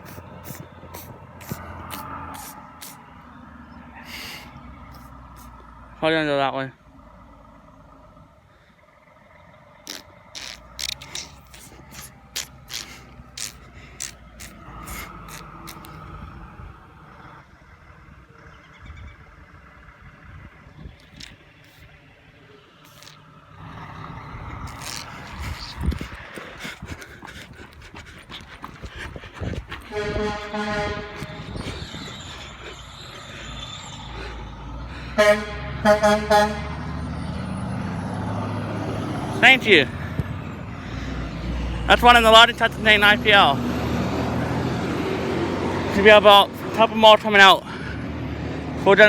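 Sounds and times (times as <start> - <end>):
distant vehicle engine rumbling: 0.0 - 49.0
sharp clicks: 9.9 - 16.1
truck horn blasts: 29.9 - 31.6, 35.2 - 36.9.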